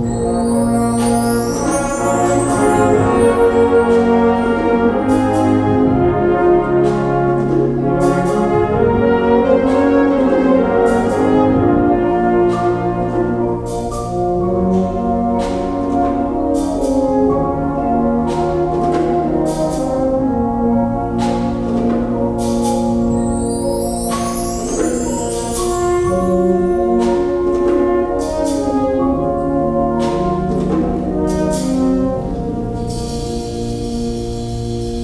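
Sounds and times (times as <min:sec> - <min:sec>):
sharp percussion strikes: 0:00.0 - 0:06.1, 0:22.4 - 0:28.8
wind band brass chords: 0:00.0 - 0:35.0.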